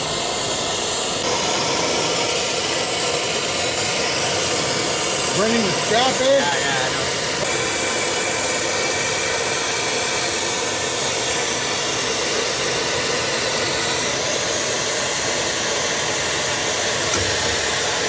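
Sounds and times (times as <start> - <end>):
gas torch flame hissing: 0.0 - 18.0.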